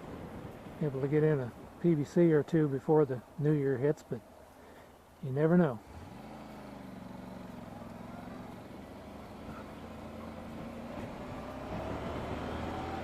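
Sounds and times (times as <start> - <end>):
motorcycle engine running: 5.9 - 12.6.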